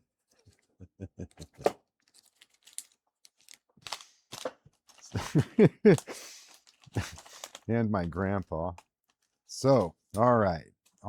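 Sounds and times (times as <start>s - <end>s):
person chuckling: 0.8s - 1.8s, 5.2s - 6.4s, 7.0s - 7.4s
paper and plastic crinkling: 2.0s - 10.0s
person speaking: 7.0s - 8.8s, 9.5s - 10.6s.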